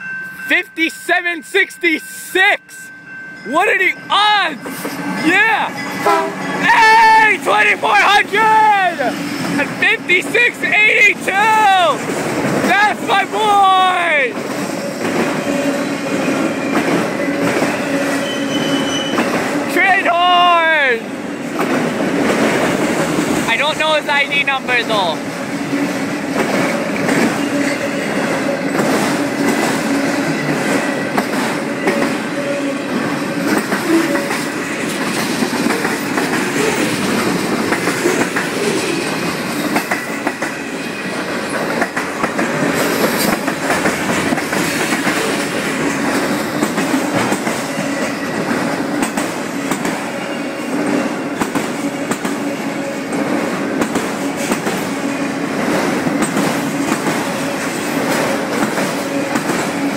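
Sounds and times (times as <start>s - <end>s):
train wheels rumbling on rail: 3.4s - 59.9s.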